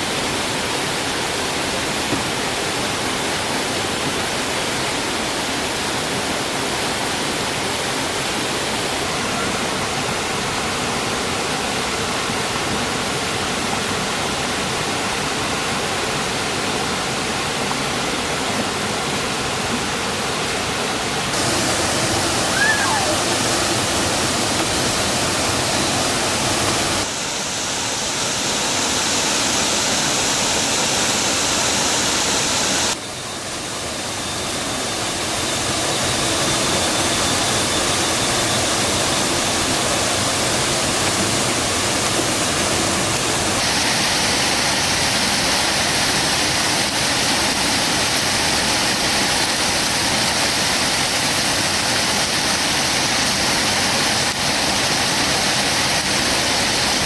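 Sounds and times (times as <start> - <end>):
rushing stream water: 0.0 - 57.0.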